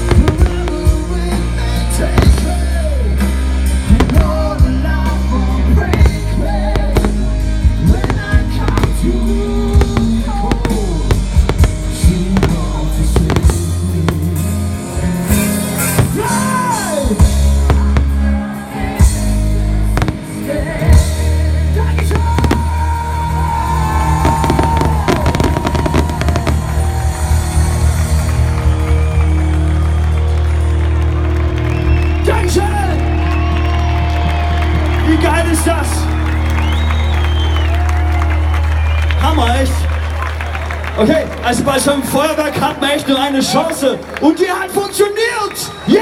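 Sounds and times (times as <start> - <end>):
firework bangs: 0.0 - 14.5, 15.4 - 18.3, 19.9 - 21.3, 21.9 - 28.6
music with heavy drum beat: 0.0 - 35.8.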